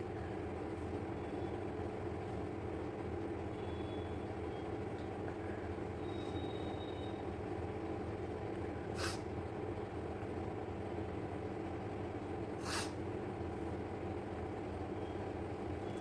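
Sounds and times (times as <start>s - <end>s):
low background hum: 0.0s - 16.0s
sharp nose sniffs: 9.0s - 9.2s, 12.6s - 13.0s.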